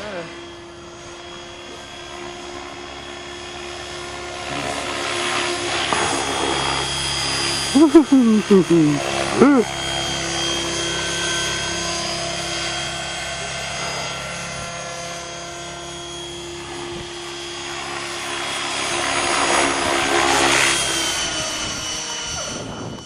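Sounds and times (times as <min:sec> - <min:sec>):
electric motor whine: 0:00.0 - 0:23.0.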